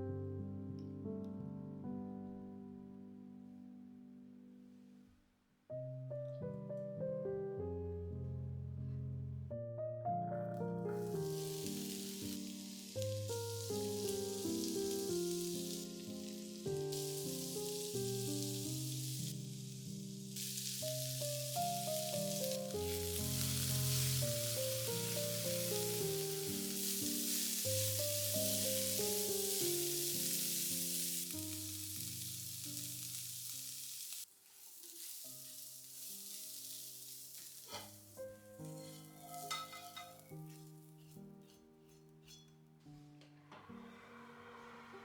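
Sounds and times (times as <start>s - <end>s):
soft background music: 5.7s - 34.0s, 38.0s - 45.0s
food sizzling in oil: 11.0s - 42.4s
stirring in a pan: 32.0s - 42.5s.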